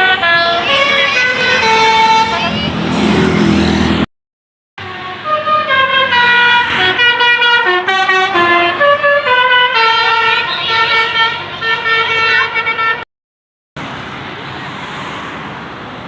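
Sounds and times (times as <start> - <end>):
multi-tone musical bus horn: 0.0 - 4.1, 4.8 - 13.1.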